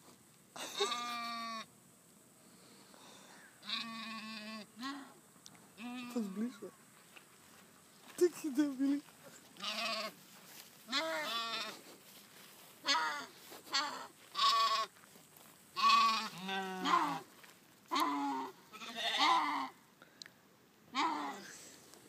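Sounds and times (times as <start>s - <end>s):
sheep bleating: 3.6s - 5.1s, 9.6s - 10.2s, 10.9s - 11.8s, 12.8s - 14.9s, 15.8s - 17.3s, 17.9s - 19.8s.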